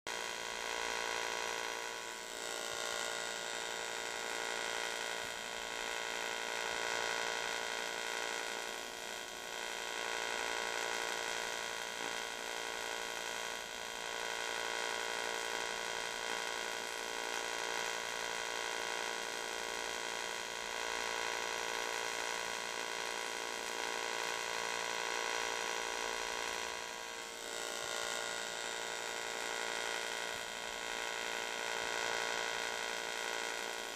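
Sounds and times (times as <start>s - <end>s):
welding arc buzzing: 0.1s - 33.9s.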